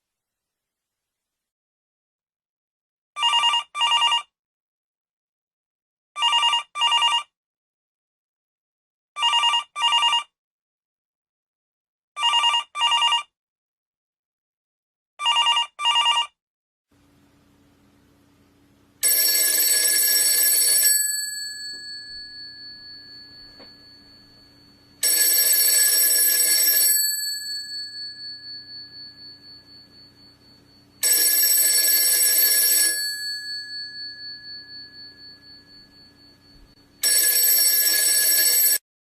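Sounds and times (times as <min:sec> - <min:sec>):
telephone bell ringing: 0:03.2 - 0:04.3, 0:06.2 - 0:07.3, 0:09.2 - 0:10.3, 0:12.2 - 0:13.3, 0:15.2 - 0:16.3, 0:19.0 - 0:38.8.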